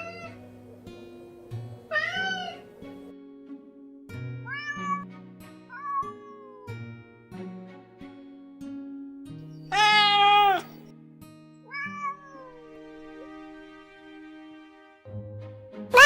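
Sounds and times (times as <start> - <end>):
cat meowing: 0.0 - 0.4, 1.9 - 2.6, 4.5 - 5.1, 5.7 - 6.7, 9.7 - 10.8, 11.7 - 12.6
background music: 0.0 - 16.0.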